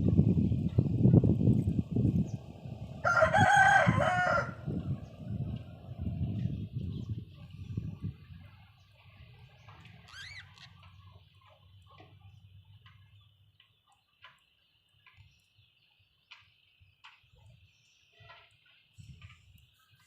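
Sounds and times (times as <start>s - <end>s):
budgies chirping: 9.4s - 11.2s.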